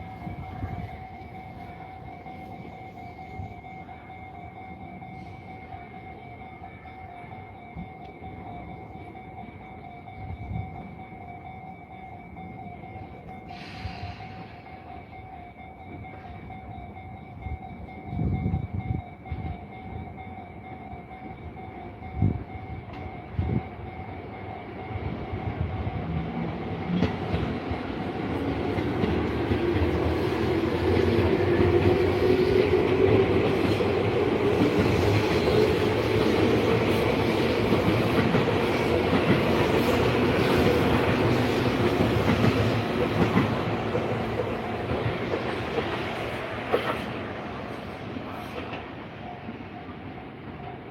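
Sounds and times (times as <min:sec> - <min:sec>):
level crossing warning signal: 0:00.0 - 0:50.9
train wheels clattering on rails: 0:10.2 - 0:50.9.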